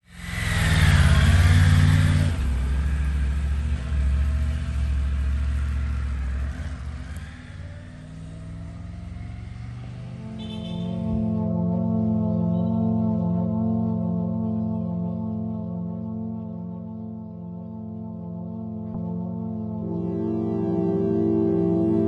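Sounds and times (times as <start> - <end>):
motorcycle engine running: 0.1 - 10.8.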